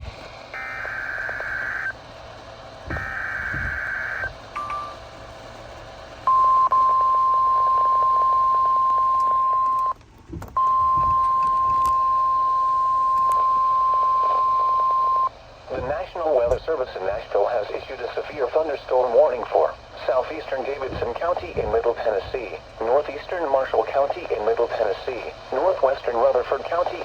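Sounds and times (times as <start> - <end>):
piercing warning alarm tone: 0.5 - 2.0, 2.9 - 5.1, 6.2 - 10.0, 10.6 - 15.4
screeching digital data bursts: 0.6 - 2.0, 2.9 - 4.3.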